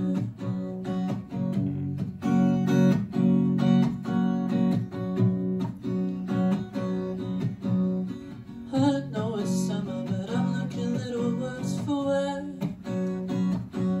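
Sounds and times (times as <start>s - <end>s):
person singing: 0.0s - 0.8s, 8.7s - 13.3s
acoustic guitar strumming: 0.0s - 14.0s.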